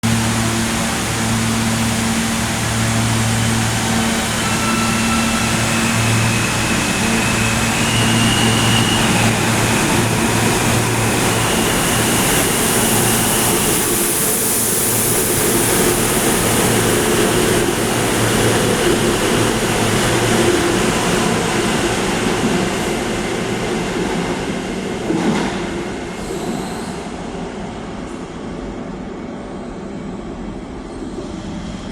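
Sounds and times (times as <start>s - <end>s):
high whine: 0.0s - 19.9s
subway train running past: 0.0s - 31.9s.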